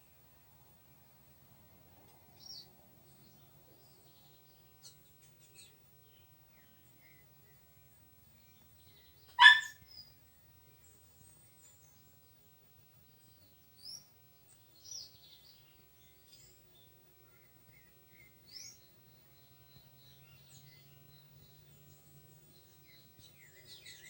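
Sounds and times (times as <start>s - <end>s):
faint birds chirping: 0.0s - 24.0s.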